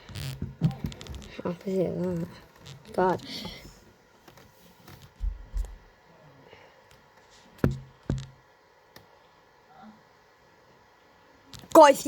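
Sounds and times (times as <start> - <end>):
low thuds: 5.2 - 5.9.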